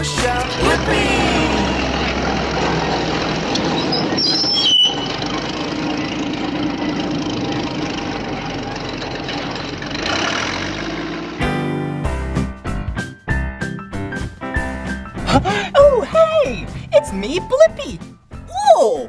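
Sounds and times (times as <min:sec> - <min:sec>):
large vehicle running: 0:00.0 - 0:13.0
high squeal: 0:01.8 - 0:06.3.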